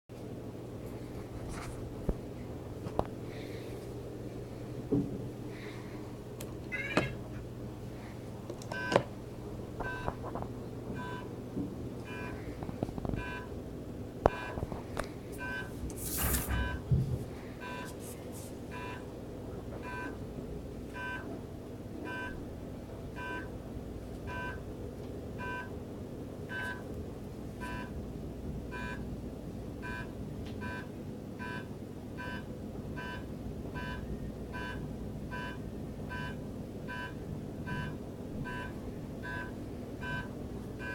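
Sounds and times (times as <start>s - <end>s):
two-tone electronic beeps: 33.8s - 40.9s.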